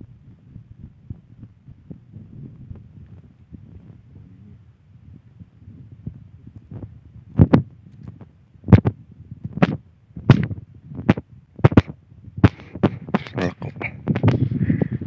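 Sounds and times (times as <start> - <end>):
sharp thumps: 6.7 - 14.5.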